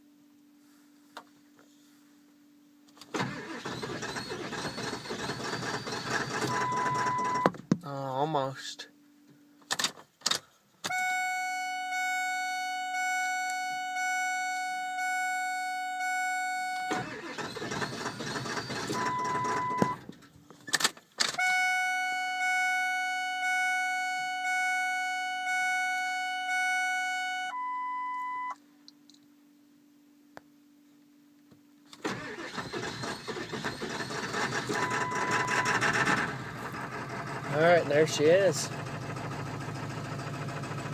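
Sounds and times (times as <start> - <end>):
starter cranking engine: 3.2 - 7.4, 16.9 - 19.8, 32.0 - 40.9
car warning chime dinging: 5.7 - 7.5, 10.9 - 20.0, 23.4 - 28.6, 34.7 - 35.8.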